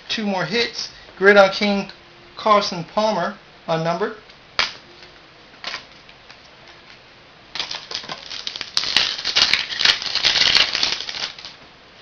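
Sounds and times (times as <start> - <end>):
wrapper and cards rustling: 7.6 - 11.6.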